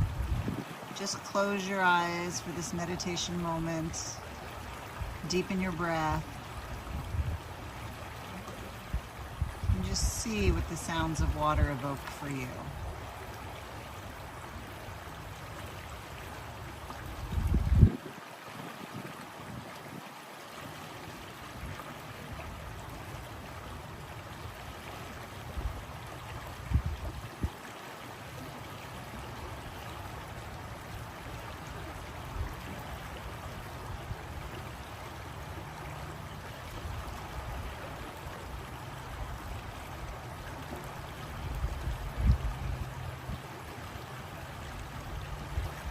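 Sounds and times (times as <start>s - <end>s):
stream flowing: 0.0s - 45.9s.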